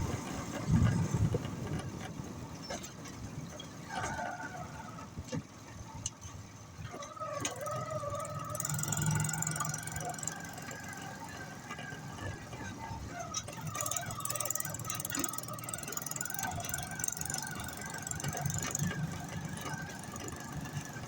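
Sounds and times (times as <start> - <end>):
motor rickshaw engine rumble: 0.0 - 21.0.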